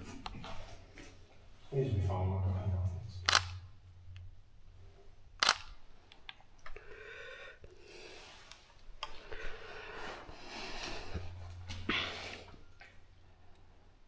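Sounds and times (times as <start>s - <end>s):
camera shutter clicks: 3.3s - 3.6s, 5.4s - 5.8s.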